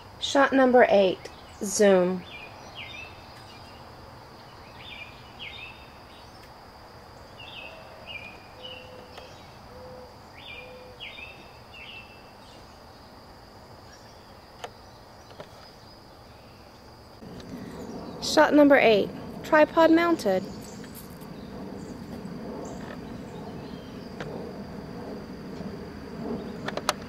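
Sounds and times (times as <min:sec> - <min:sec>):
high insect drone: 0:00.0 - 0:27.0
bird chirping: 0:01.0 - 0:06.5, 0:07.2 - 0:13.2, 0:13.8 - 0:24.3
faint low hoots: 0:07.6 - 0:11.1.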